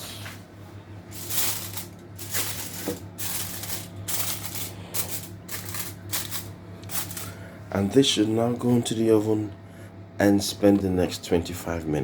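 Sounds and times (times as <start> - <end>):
aluminium foil crinkling: 1.1 - 7.4.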